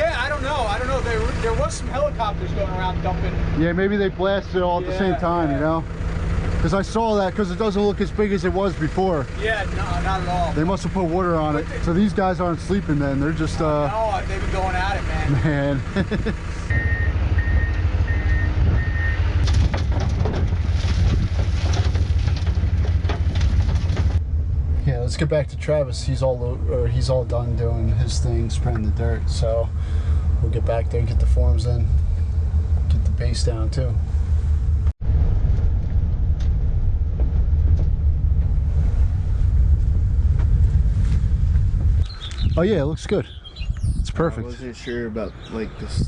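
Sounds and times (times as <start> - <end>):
diesel engine running: 0.0 - 46.0
vehicle rumbling on the move: 0.0 - 46.0
reversing beeper: 16.7 - 19.4
rattling clatter: 19.3 - 24.2.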